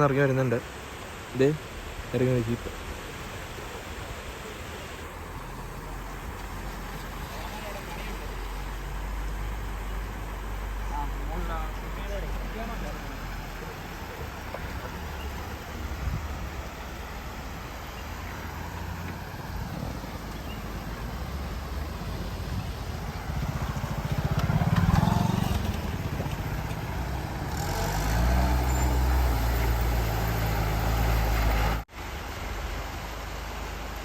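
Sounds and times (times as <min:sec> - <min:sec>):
vehicle engine running: 0:19.5 - 0:28.7.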